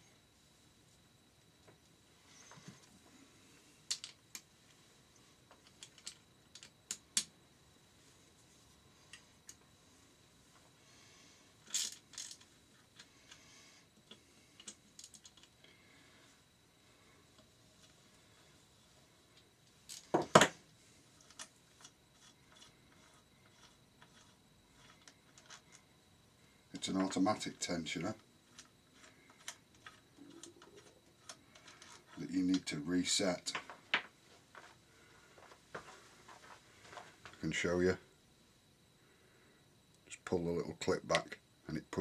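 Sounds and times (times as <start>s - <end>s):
tools and parts handled: 5.5s - 7.3s, 11.6s - 13.4s, 14.1s - 15.6s, 21.2s - 25.8s, 28.5s - 32.6s.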